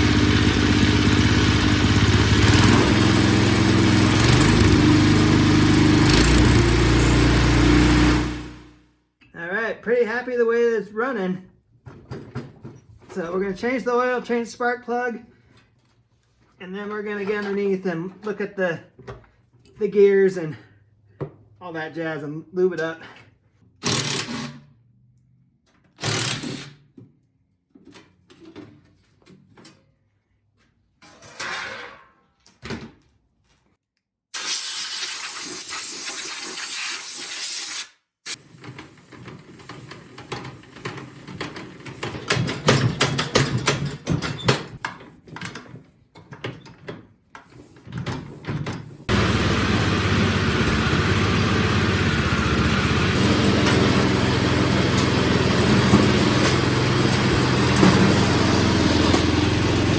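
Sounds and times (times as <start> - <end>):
small engine running: 0.0 - 8.8, 38.3 - 42.2, 49.1 - 59.9.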